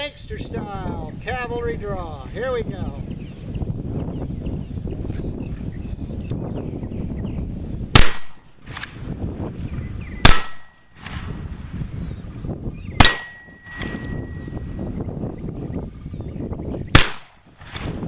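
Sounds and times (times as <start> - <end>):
revolver shots with echo: 10.2 - 10.7, 13.0 - 14.0, 17.0 - 17.9.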